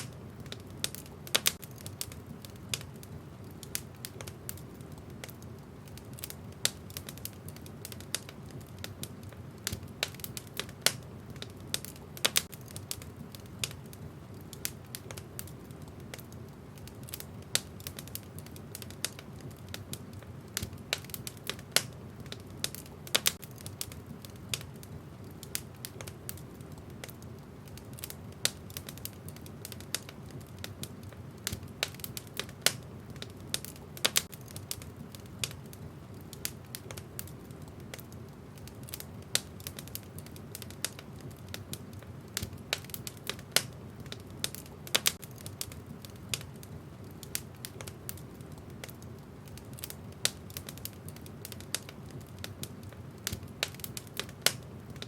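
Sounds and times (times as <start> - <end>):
wood crackling in a fireplace: 0.0 - 55.0.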